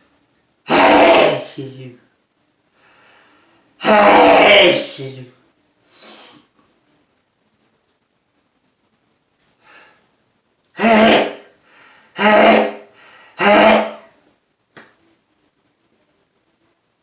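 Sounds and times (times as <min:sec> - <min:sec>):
man sneezing: 0:00.7 - 0:01.8, 0:03.8 - 0:05.3, 0:10.8 - 0:11.6, 0:12.2 - 0:14.1
short in-breaths: 0:02.8 - 0:03.7, 0:11.6 - 0:12.2, 0:12.9 - 0:13.4.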